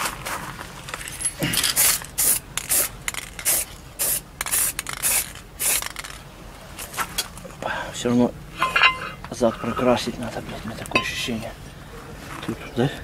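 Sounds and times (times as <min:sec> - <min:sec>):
spray can hissing bursts: 0:01.8 - 0:06.2.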